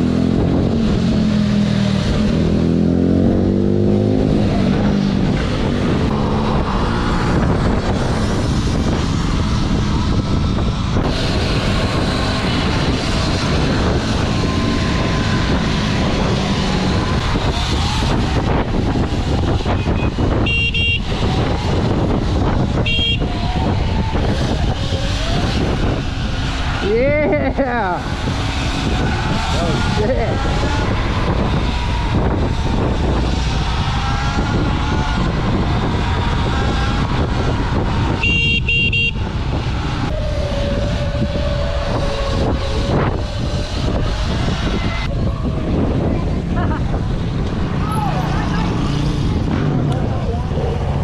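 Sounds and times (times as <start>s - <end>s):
wind and road rush: 0.0s - 51.0s
horn beeping: 19.8s - 21.2s, 22.8s - 23.3s, 38.2s - 39.2s.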